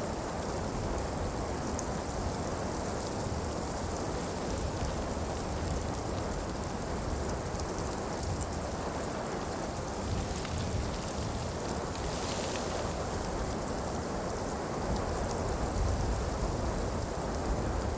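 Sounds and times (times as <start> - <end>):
steady snowfall hiss: 0.0 - 17.9
faint ticks: 4.3 - 13.7.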